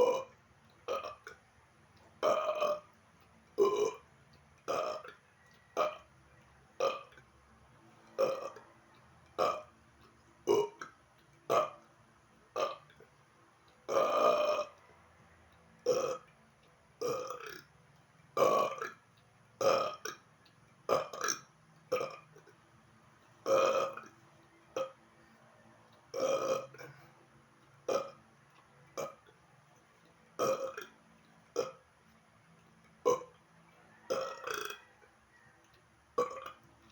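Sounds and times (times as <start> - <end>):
man burping: 0.0 - 1.4, 2.2 - 2.9, 3.6 - 4.0, 4.7 - 5.2, 6.8 - 7.2, 8.2 - 8.6, 9.4 - 9.7, 10.5 - 11.8, 12.6 - 12.9, 13.9 - 14.8, 15.8 - 16.3, 17.0 - 17.6, 18.4 - 19.0, 19.6 - 20.2, 20.9 - 22.5, 23.4 - 24.1, 26.1 - 27.1, 27.9 - 28.2, 29.0 - 29.3, 30.4 - 30.9, 31.6 - 31.8, 33.0 - 33.3, 36.2 - 36.6.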